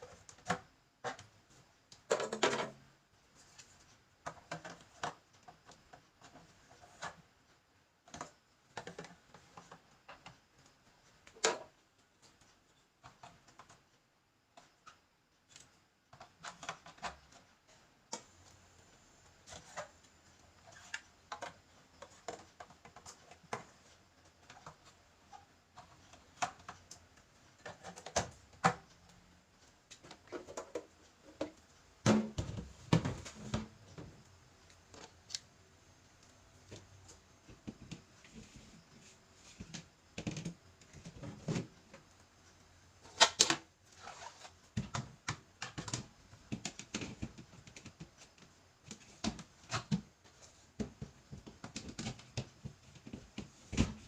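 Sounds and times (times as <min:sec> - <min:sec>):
plastic parts clicking and knocking: 0:00.1 - 0:02.9, 0:03.6 - 0:07.2, 0:08.0 - 0:10.4, 0:14.6 - 0:17.5, 0:20.5 - 0:29.1, 0:29.9 - 0:34.2, 0:43.0 - 0:54.0.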